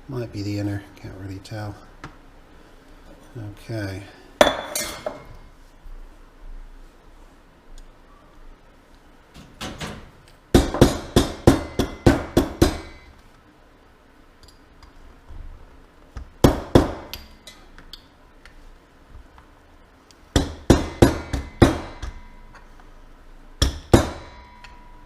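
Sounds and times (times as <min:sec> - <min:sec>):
hammer tapping on metal: 0:09.6 - 0:13.1, 0:20.4 - 0:22.6, 0:23.6 - 0:24.9.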